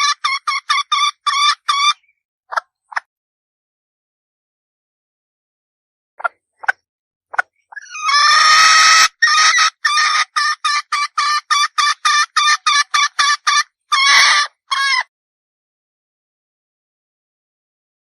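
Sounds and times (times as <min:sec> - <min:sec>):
hen calling and clucking: 0:00.0 - 0:03.1, 0:07.4 - 0:15.1.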